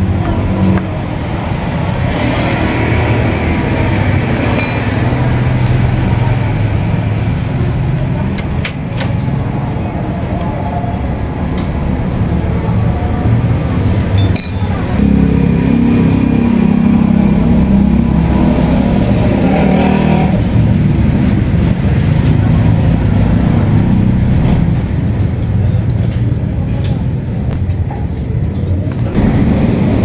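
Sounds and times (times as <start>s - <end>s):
motorcycle engine running: 12.2s - 25.9s.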